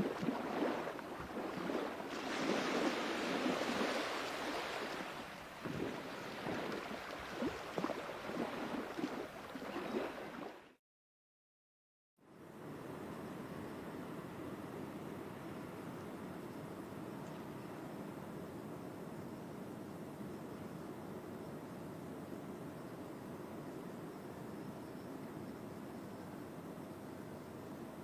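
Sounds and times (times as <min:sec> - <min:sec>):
sea waves washing onto shore: 0:00.0 - 0:10.6.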